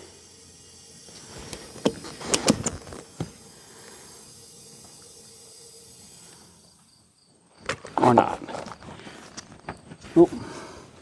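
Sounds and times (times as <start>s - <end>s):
air hissing into tire: 0.0s - 7.5s
sharp clicks and knocks: 1.1s - 3.5s.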